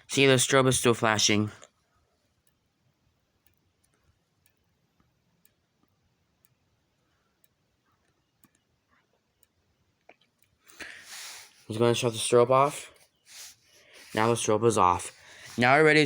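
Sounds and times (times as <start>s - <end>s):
faint strobe ticks: 3.4s - 8.7s.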